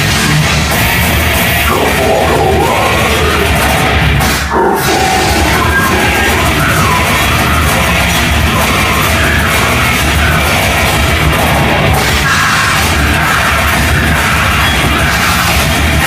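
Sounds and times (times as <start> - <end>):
heavy rock music: 0.0 - 16.0
person yelling vocals: 1.7 - 3.6.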